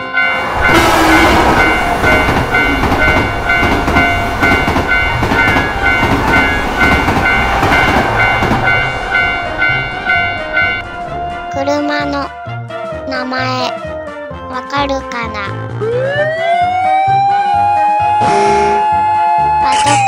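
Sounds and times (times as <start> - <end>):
crossing warning bell ringing: 0.0 - 11.6
train passing: 0.0 - 13.7.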